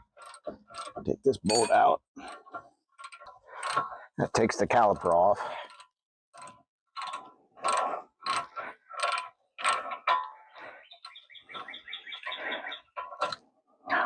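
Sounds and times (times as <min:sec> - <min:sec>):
ratchet wrench clicking: 0:05.6 - 0:10.3.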